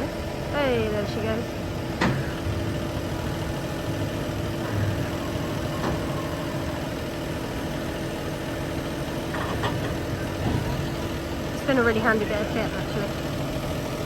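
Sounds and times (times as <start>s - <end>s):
tractor engine idling: 0.0s - 14.0s.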